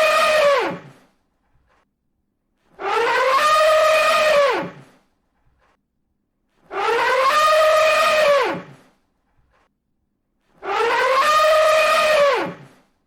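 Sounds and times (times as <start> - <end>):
elephant trumpeting: 0.0 - 1.0, 2.8 - 4.9, 6.7 - 8.8, 10.6 - 12.8.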